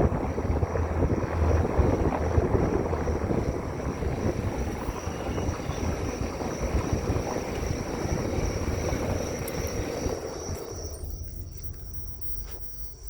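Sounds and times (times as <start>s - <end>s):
crickets chirring: 0.0s - 13.0s
vehicle rumble and road noise: 0.0s - 13.0s.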